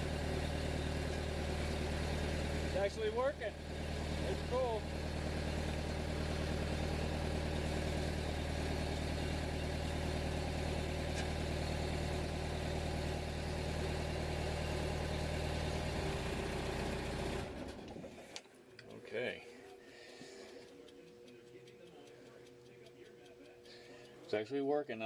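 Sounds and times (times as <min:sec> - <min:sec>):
loader engine idling: 0:00.0 - 0:18.2.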